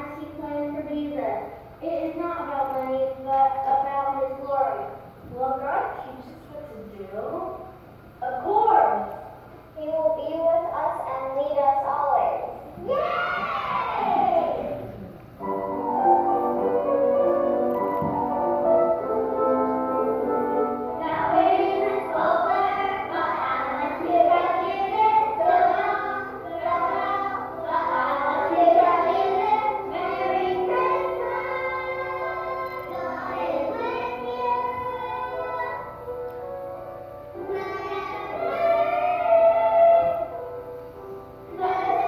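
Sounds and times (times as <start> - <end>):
instrumental accompaniment: 14.4 - 42.0
children singing: 21.0 - 35.9, 37.4 - 40.3.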